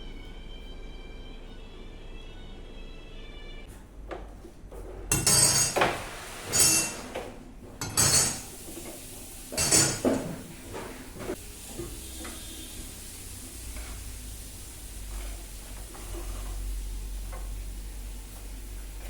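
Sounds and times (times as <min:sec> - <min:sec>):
pots and dishes clattering: 0:04.8 - 0:12.4.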